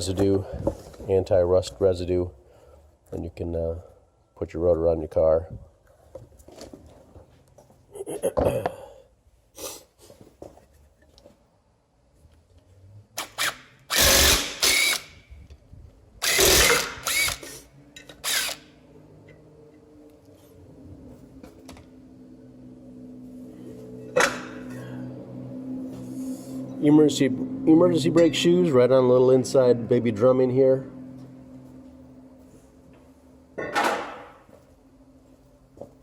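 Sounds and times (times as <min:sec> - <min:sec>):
power tool bursts: 0:13.2 - 0:15.2, 0:16.2 - 0:18.8.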